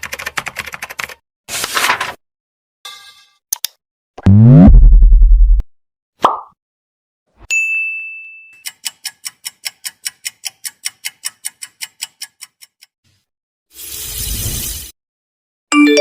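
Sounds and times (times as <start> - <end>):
bell-like ding: 7.5 - 8.6.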